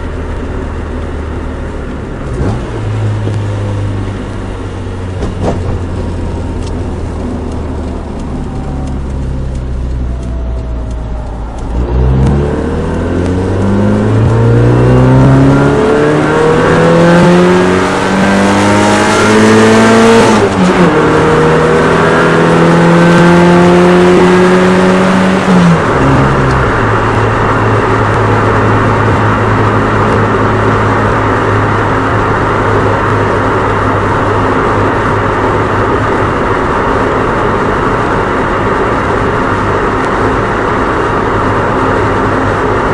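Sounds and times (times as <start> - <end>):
car engine revving: 0.0 - 42.9
road noise: 0.0 - 42.9.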